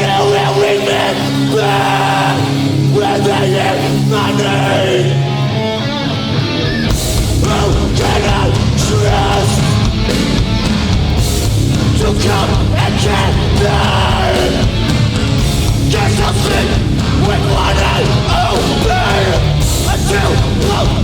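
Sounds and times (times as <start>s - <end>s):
bass guitar: 0.0s - 21.0s
distorted guitars: 0.0s - 21.0s
drums and cymbals crashing: 6.9s - 21.0s.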